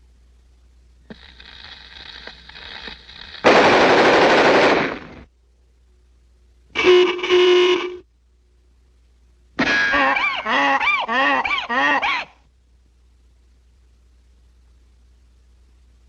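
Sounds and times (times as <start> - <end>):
faint crackling: 1.0 - 5.3
cartoon machine-gun burst: 3.4 - 5.3
horn-like honk: 6.7 - 8.0.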